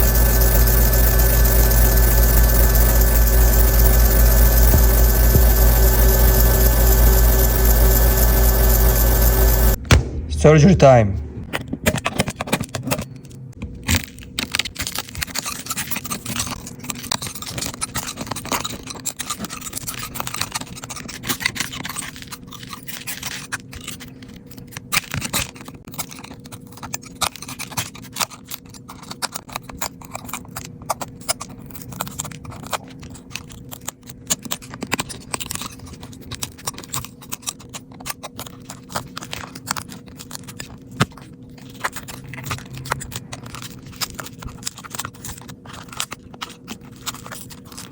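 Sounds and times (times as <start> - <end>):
small tools scraping and clicking: 11.5 - 47.9.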